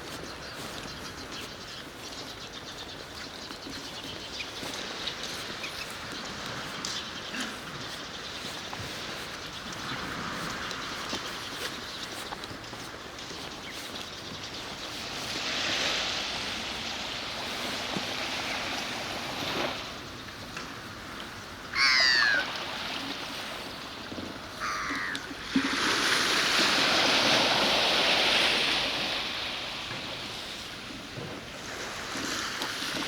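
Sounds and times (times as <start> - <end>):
sea waves washing: 0.0 - 33.0
harsh bird call: 21.8 - 22.5.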